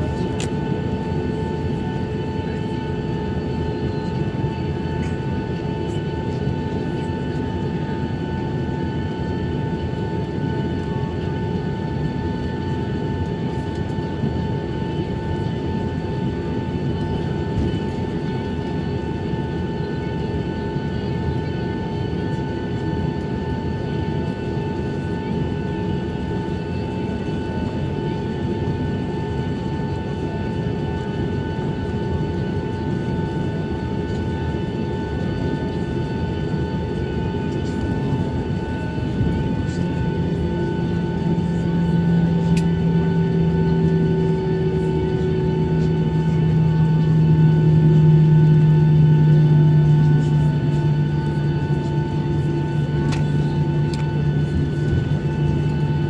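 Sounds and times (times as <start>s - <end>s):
airplane engine rumble in cabin: 0.0s - 56.0s
steady whining tones: 35.7s - 56.0s.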